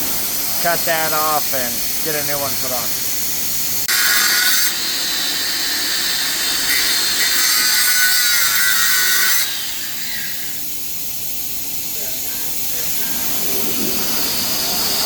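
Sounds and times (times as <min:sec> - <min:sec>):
angle grinder cutting steel: 0:00.0 - 0:10.8, 0:12.2 - 0:15.0.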